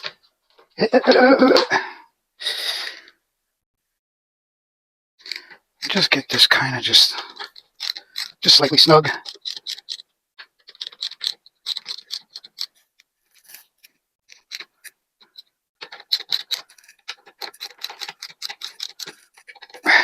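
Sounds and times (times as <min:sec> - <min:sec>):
socket ratchet clicking: 0:07.4 - 0:10.0, 0:10.6 - 0:12.8, 0:14.3 - 0:19.8.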